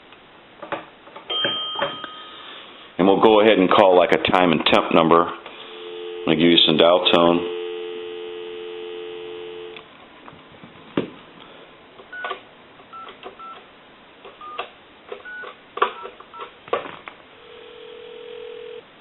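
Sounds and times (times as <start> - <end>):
telephone dial tone: 5.7 - 6.4, 7.4 - 9.8, 15.2 - 16.5, 17.4 - 18.8
touch-tone keypad beeps: 15.2 - 16.4.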